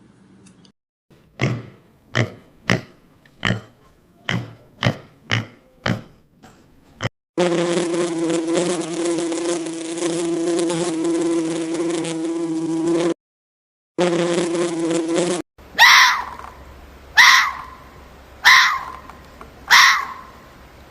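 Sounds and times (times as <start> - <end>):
insect buzzing: 7.4 - 13.2, 14.0 - 15.4.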